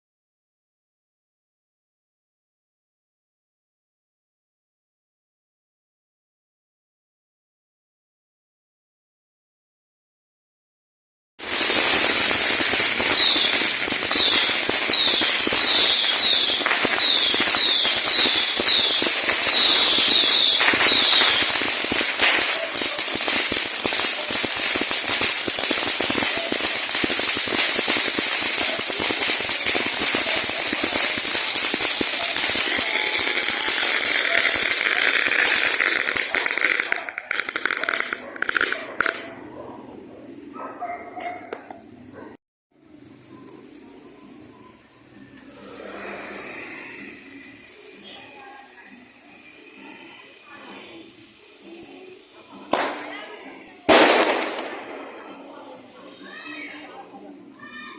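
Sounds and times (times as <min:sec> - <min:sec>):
firecrackers crackling: 0:11.4 - 0:39.5, 0:42.8 - 0:57.9
short falling whistles: 0:13.1 - 0:21.7.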